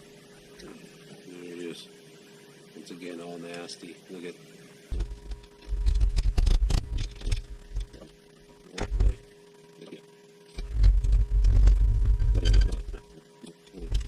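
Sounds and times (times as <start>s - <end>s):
faint steady hum: 0.0s - 14.0s
low rumbling thumps: 4.9s - 8.0s, 8.8s - 9.2s, 10.6s - 13.1s
sharp knocks of parts: 4.9s - 8.1s.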